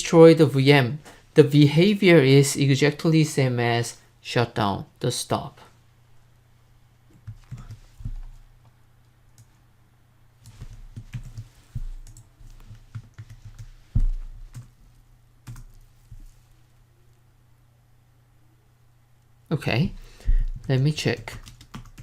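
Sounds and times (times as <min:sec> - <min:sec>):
typing on computer keyboard: 0:10.7 - 0:13.7, 0:15.5 - 0:15.8, 0:20.6 - 0:22.0.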